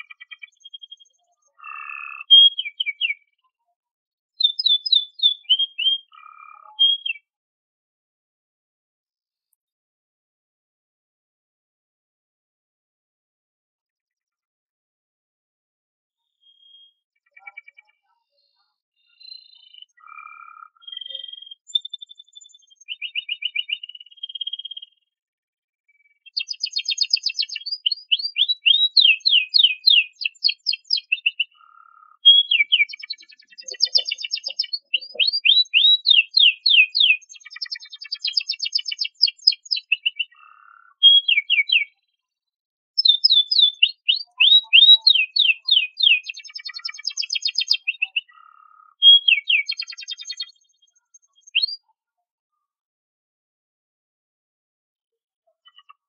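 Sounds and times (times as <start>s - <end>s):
canary singing trills: 0.0s - 3.4s, 4.4s - 7.3s, 16.3s - 25.0s, 25.9s - 42.1s, 43.0s - 51.9s.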